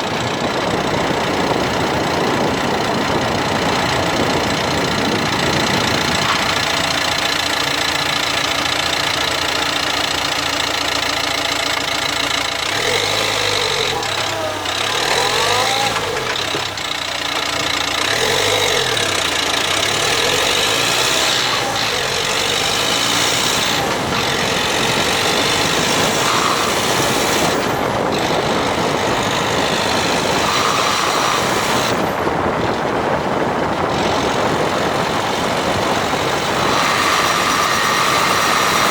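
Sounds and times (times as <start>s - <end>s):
diesel car engine running: 0.0s - 38.9s.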